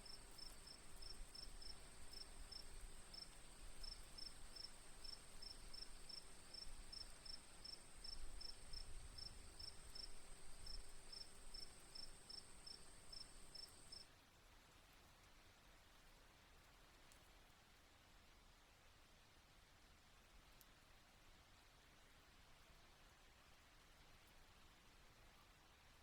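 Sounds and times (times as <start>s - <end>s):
insect high-pitched trill: 0.0s - 14.0s
insect short chirps: 0.0s - 14.0s.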